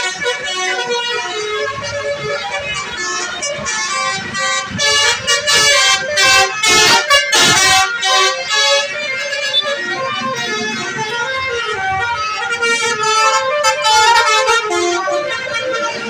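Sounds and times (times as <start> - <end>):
bus musical horns playing tune: 0.0 - 16.0.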